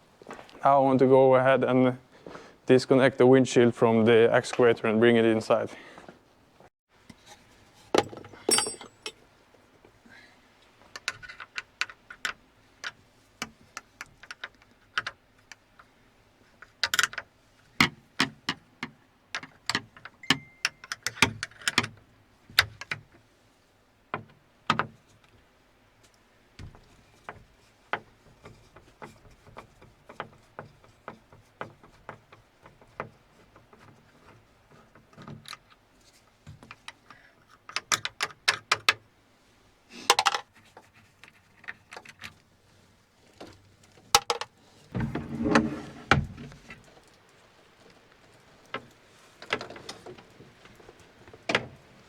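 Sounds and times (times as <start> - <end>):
hand tools clinking on metal: 8.0 - 9.2, 20.2 - 21.2.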